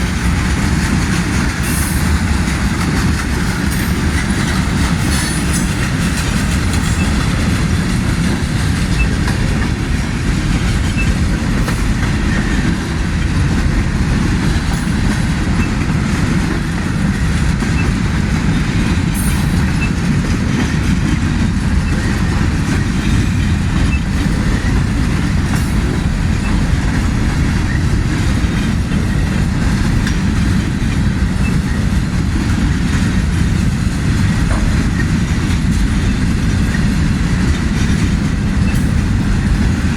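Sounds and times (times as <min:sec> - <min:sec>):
train wheels rumbling on rails: 0:00.0 - 0:39.9.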